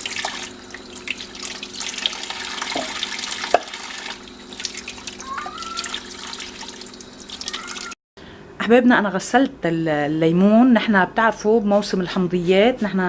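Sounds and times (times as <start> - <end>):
tap running into sink: 2.0 - 4.7.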